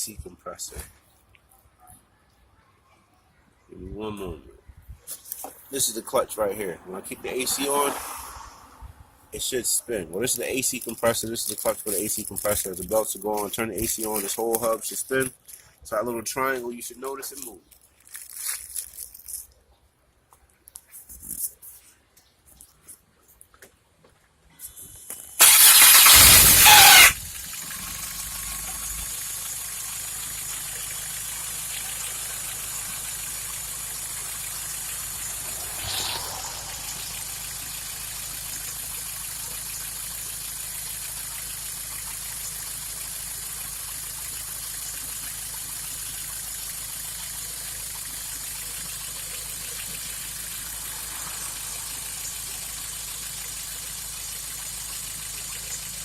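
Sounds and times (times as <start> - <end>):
car engine idling: 25.4 - 56.0
starter motor screeching: 25.4 - 56.0.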